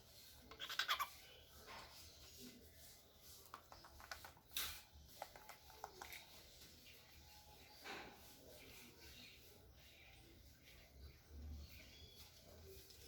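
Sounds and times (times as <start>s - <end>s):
cockatiel chirping: 0.6s - 1.2s.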